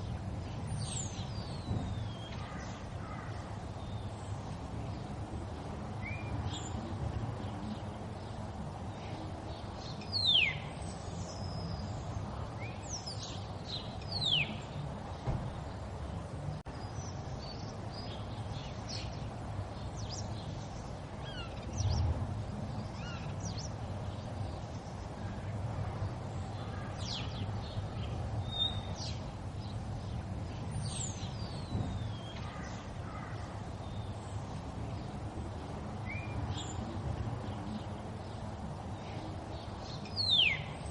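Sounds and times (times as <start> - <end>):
birds chirping: 0.0 - 40.9
low thud: 15.2 - 15.6.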